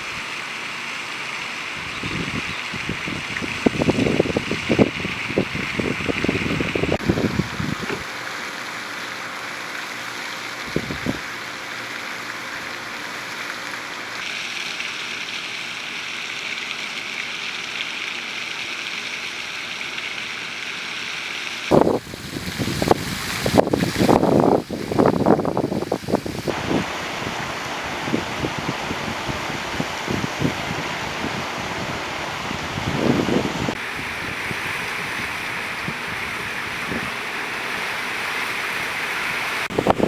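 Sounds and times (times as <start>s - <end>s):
wind blowing with rushing hiss: 0.0s - 0.6s, 1.6s - 8.5s, 10.0s - 12.0s, 21.7s - 40.0s
wind buffeting microphone: 1.8s - 8.1s, 10.6s - 11.2s, 21.7s - 37.2s, 39.6s - 40.0s.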